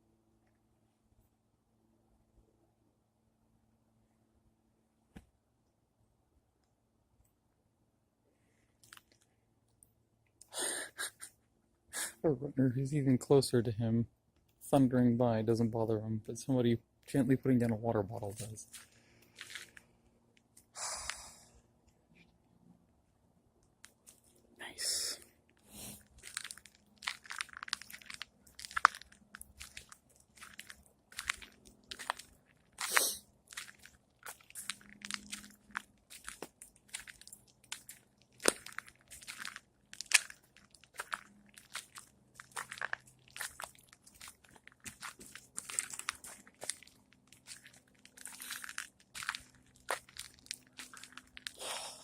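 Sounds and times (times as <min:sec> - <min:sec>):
dry crunching and crackling: 0:18.2 - 0:20.6, 0:25.5 - 0:51.6
squirrel gnawing and chewing: 0:25.5 - 0:51.6.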